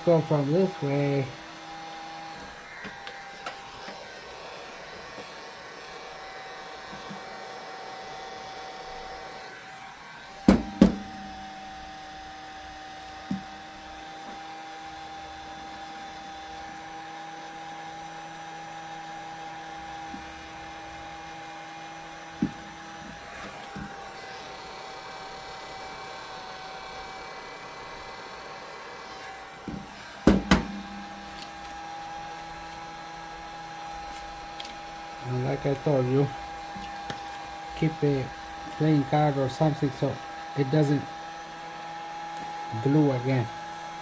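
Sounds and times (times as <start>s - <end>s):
hot-air blower whining and hissing: 0.0s - 44.0s
sharp knocks of tools: 29.7s - 31.7s.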